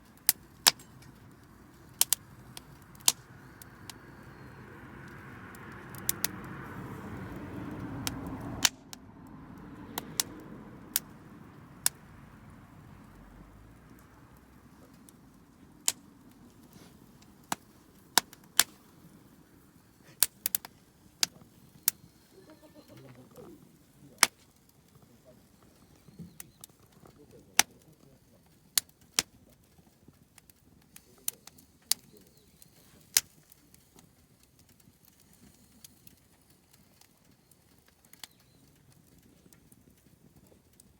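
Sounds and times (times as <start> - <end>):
campfire crackling and popping: 0.0 - 40.9.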